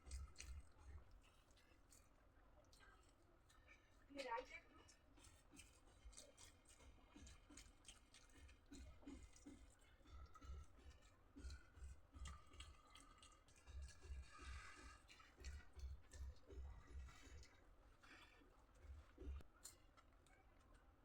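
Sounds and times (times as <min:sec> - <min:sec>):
soft chewing thuds: 0:00.0 - 0:21.0
wet mouth clicks: 0:05.2 - 0:16.4.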